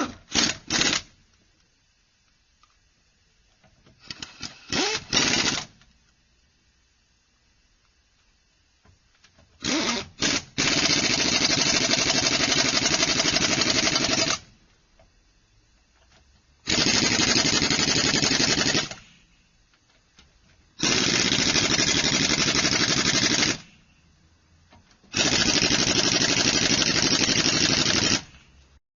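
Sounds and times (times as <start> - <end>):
pneumatic wrench hammering: 0.0 - 1.1, 4.0 - 5.7, 9.6 - 14.5, 16.6 - 19.0, 20.8 - 23.7, 25.1 - 28.4.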